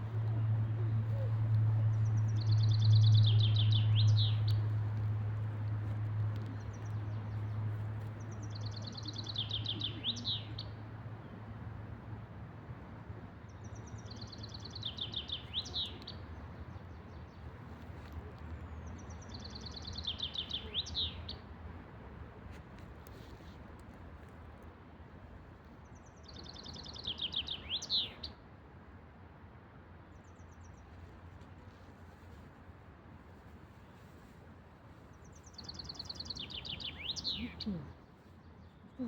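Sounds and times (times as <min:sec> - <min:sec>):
songbird singing: 0:00.0 - 0:05.1, 0:06.4 - 0:11.4, 0:13.5 - 0:17.5, 0:18.4 - 0:21.5, 0:26.0 - 0:28.4, 0:35.0 - 0:39.0
steady low rumble: 0:00.0 - 0:08.4.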